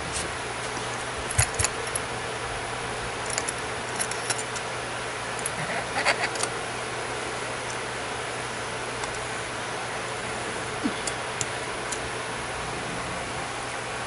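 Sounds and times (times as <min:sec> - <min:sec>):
metal clicks of lock-picking: 0:01.3 - 0:02.0, 0:03.2 - 0:04.7.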